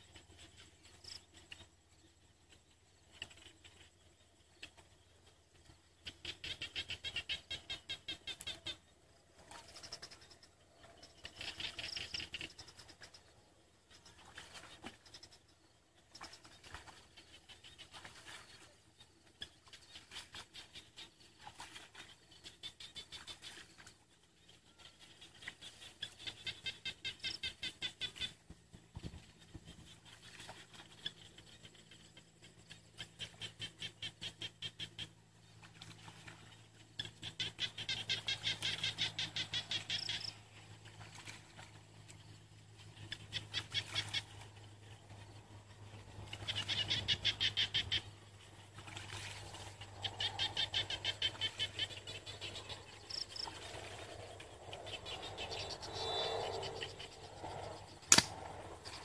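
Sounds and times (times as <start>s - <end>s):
small animals calling in trills: 37.0s - 40.4s, 46.3s - 54.1s.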